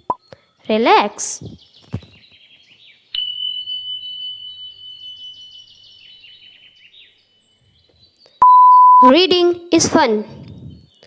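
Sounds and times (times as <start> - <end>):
birdsong chirping: 0.0 - 11.0
bright chime ringing: 3.2 - 6.5.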